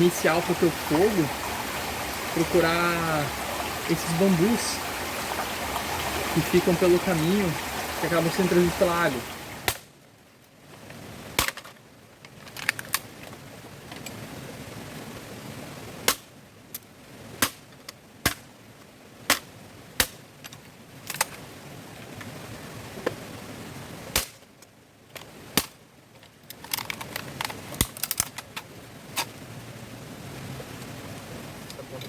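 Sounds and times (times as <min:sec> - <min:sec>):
wood being chopped and broken: 0:09.6 - 0:09.9.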